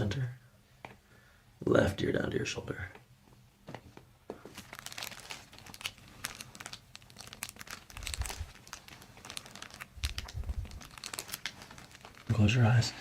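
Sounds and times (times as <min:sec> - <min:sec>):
table cover crinkling: 0:04.4 - 0:12.5.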